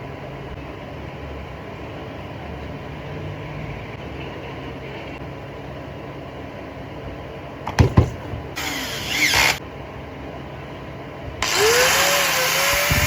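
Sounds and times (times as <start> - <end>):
electric grinder motor whine: 8.6 - 9.6, 11.4 - 13.0.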